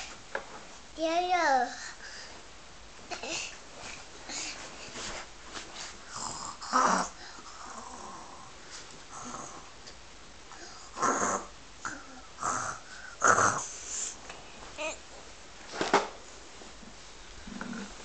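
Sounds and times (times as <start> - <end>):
soft breathing: 1.6 - 2.5, 3.1 - 6.4, 7.1 - 9.7, 11.9 - 14.8
person snoring: 6.1 - 8.5, 9.1 - 9.7, 10.6 - 14.1.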